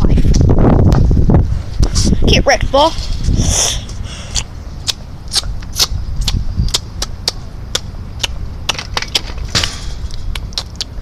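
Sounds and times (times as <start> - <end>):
steady low rumble: 0.0 - 11.0.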